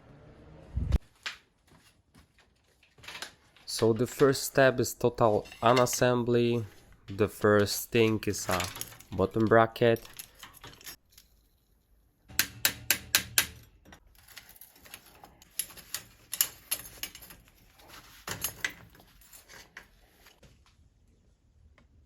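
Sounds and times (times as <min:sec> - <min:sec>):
metal tools clicking on bicycle parts: 0:07.6 - 0:11.4, 0:12.4 - 0:17.6.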